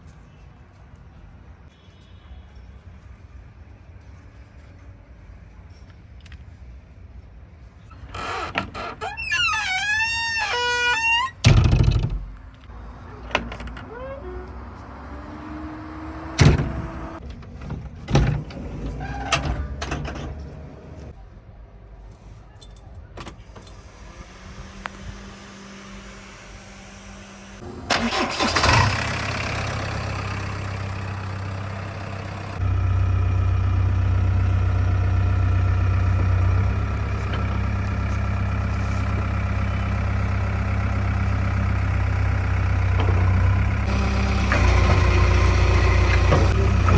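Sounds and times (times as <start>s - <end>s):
diesel engine cranking and running: 23.7s - 46.9s.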